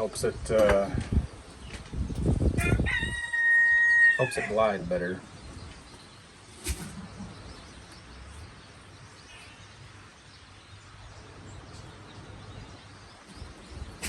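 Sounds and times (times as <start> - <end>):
low steady background noise: 0.0 - 14.0
faint bird chirp: 4.8 - 14.0.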